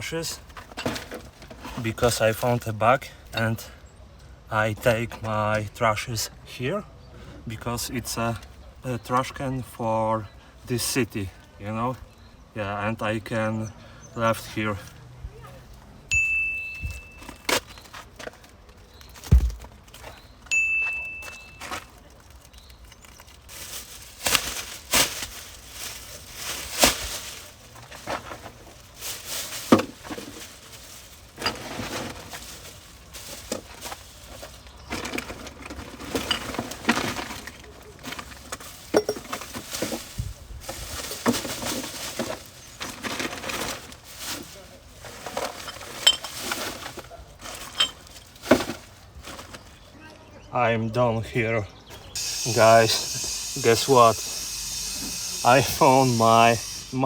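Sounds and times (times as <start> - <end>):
bottles and cans clinking: 16.1 - 18.3, 19.1 - 23.7, 34.8 - 40.1, 45.1 - 49.5, 52.2 - 57.0
plastic bags rustling: 16.2 - 49.9, 52.2 - 57.0.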